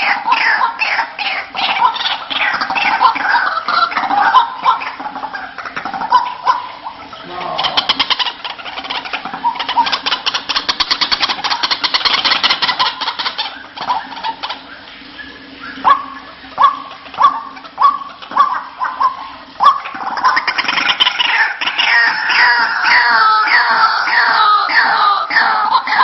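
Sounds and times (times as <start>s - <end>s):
waterhen calling: 0.0s - 26.0s.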